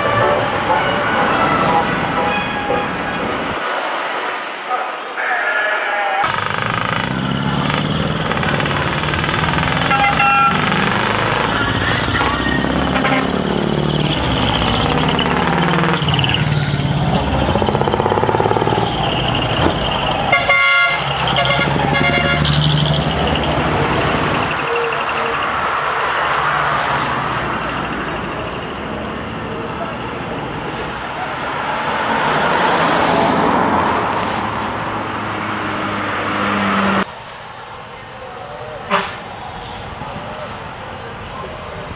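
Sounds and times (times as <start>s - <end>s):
truck engines running: 0.0s - 41.9s
air horn blasts: 9.8s - 10.8s, 12.9s - 13.4s, 20.3s - 22.5s, 38.9s - 39.2s.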